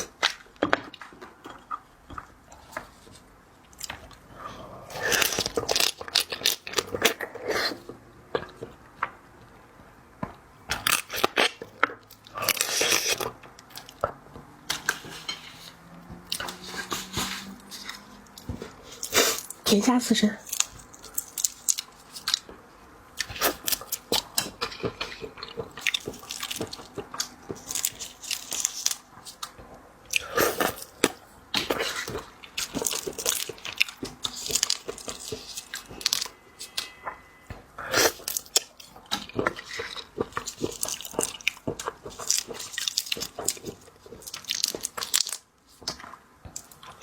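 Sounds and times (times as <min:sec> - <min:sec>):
wet chewing and mouth smacks: 0:10.8 - 0:19.6, 0:38.0 - 0:47.0.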